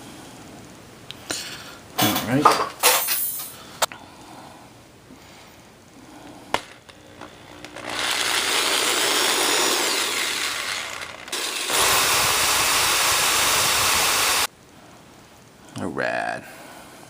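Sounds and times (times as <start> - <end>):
electric motor tool running: 6.9 - 14.5.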